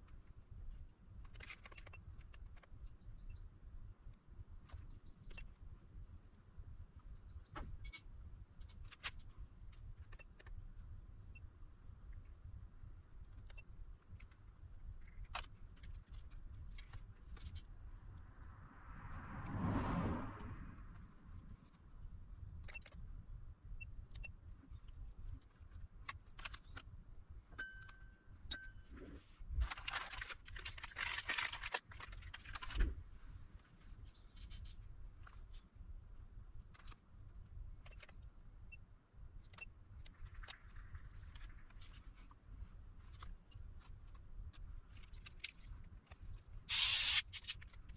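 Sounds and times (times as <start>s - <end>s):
low steady hum: 20.5s - 30.6s.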